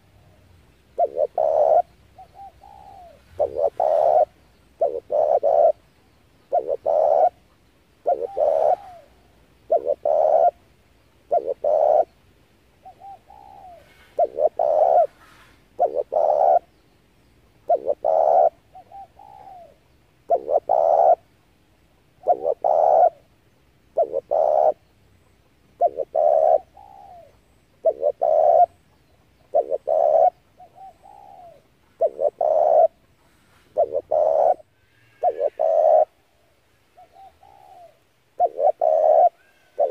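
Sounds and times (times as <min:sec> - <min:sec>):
dove cooing: 0:00.0 - 0:12.2, 0:12.8 - 0:16.8, 0:17.6 - 0:21.3, 0:22.1 - 0:39.9.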